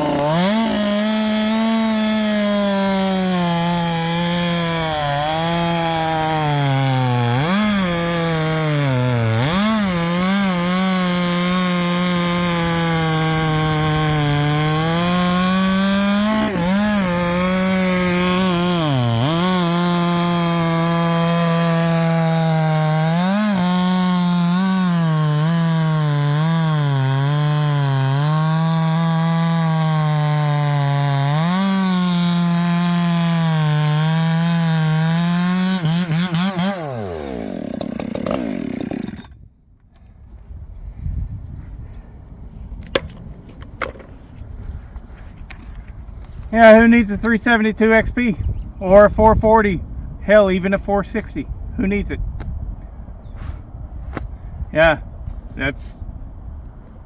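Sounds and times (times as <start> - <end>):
chainsaw cutting wood: 0.0 - 40.0, 42.8 - 44.2, 45.2 - 48.3.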